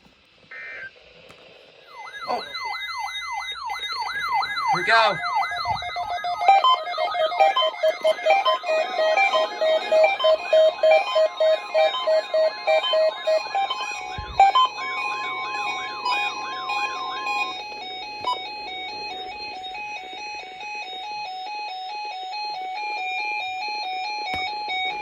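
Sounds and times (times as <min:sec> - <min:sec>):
steady alarm tone: 0:01.8 - 0:25.0
fast electronic beeping: 0:01.9 - 0:20.5
warbling alarm sweeps: 0:01.9 - 0:22.8.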